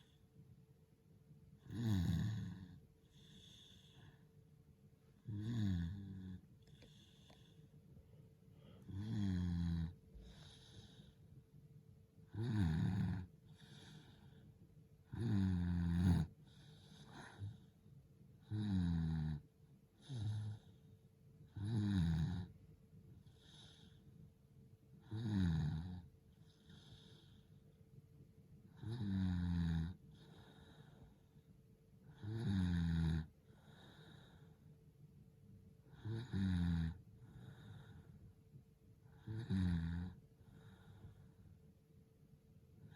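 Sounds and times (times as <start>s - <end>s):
person snoring lightly: 1.7s - 4.0s, 8.8s - 11.0s.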